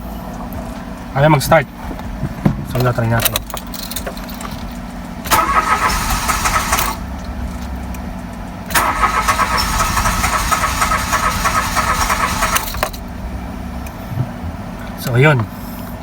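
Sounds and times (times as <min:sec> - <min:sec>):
starter cranking car engine: 0:05.2 - 0:13.2.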